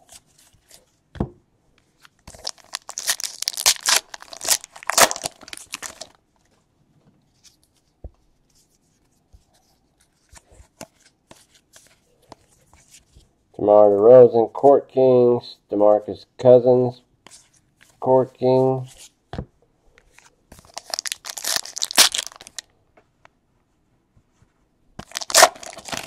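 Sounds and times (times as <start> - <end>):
wrapper crinkling and tearing: 2.3 - 6.2, 20.7 - 22.7, 25.0 - 26.0.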